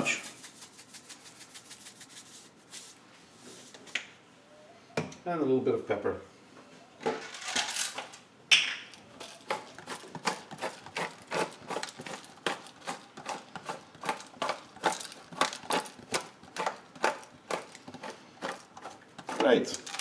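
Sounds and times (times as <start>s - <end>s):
pepper mill grinding: 0.0s - 3.0s, 9.0s - 20.0s.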